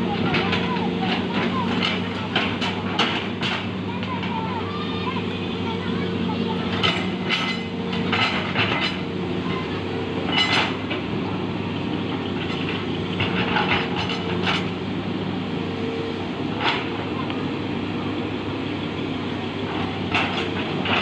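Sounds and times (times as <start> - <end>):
excavator diesel engine running: 0.0 - 21.0
sharp metal clanks: 6.7 - 9.0.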